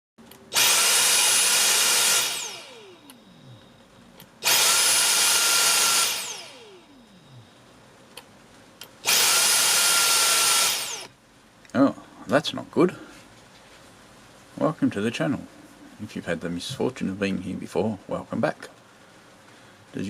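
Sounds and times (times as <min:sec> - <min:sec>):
vacuum cleaner motor whining: 0:00.5 - 0:03.7, 0:04.4 - 0:07.2, 0:09.0 - 0:11.1.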